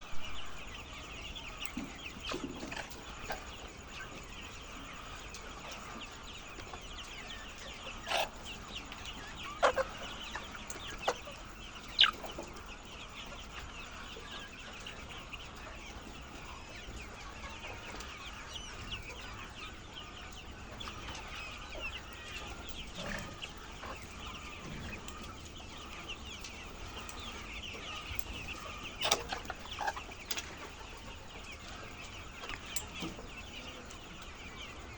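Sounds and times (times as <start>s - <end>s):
hens clucking: 0.2s - 34.9s.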